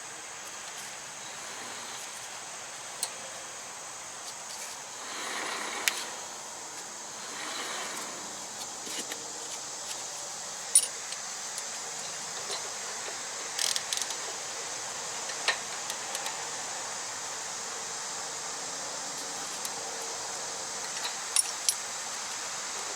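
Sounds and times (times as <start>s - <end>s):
steady hiss: 0.0s - 22.9s
hand tools clinking on metal: 10.7s - 11.0s, 20.9s - 21.8s.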